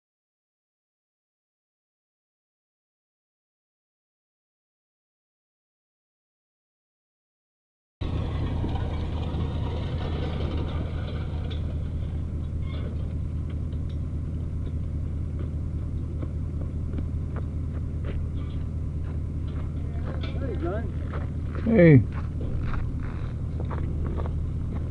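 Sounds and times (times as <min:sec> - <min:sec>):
engine idling: 0:08.0 - 0:24.9.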